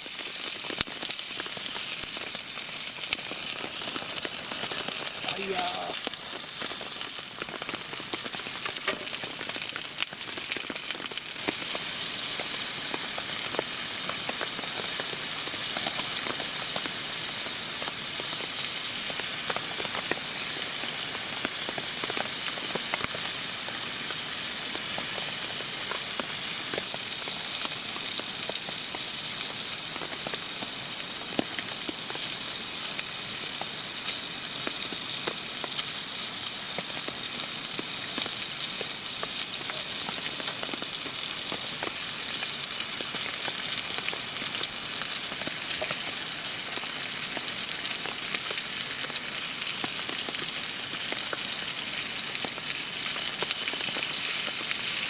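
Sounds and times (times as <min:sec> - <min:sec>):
food sizzling in a pan: 0:00.0 - 0:55.0
small pops and crackles: 0:00.3 - 0:11.8, 0:21.1 - 0:23.3.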